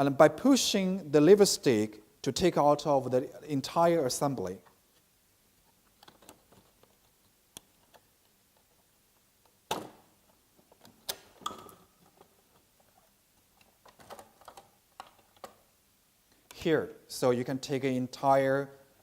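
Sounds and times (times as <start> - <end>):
clicks and knocks of parts: 5.7 - 15.7.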